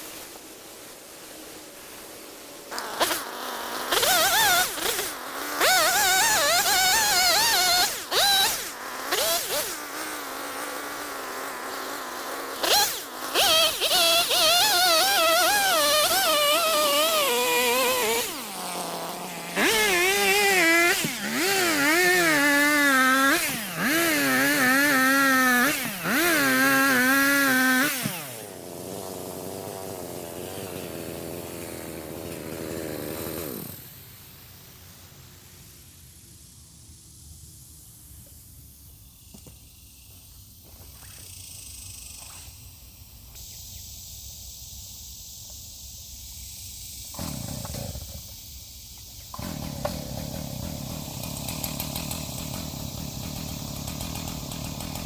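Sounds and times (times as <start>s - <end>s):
chainsaw revving and cutting: 2.7s - 34.5s, 47.0s - 48.5s, 49.2s - 55.0s
chainsaw idling: 2.7s - 35.5s, 46.6s - 55.0s.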